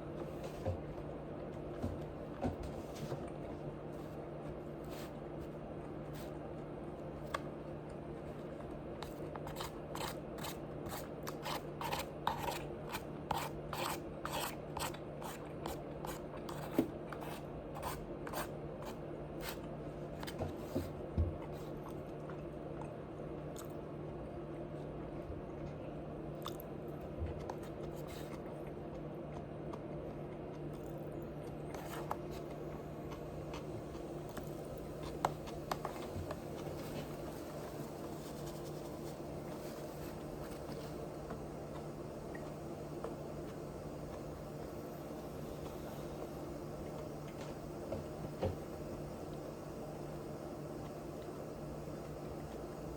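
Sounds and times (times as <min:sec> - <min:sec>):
steady low hum: 0:00.0 - 0:52.9
chewing crunchy food: 0:21.4 - 0:37.2.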